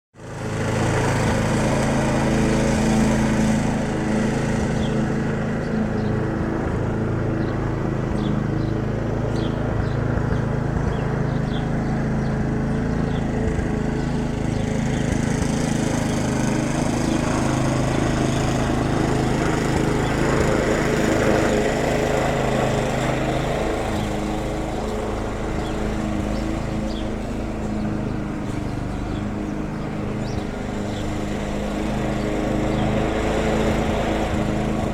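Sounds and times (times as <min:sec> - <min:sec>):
motor hum: 0:00.2 - 0:34.9.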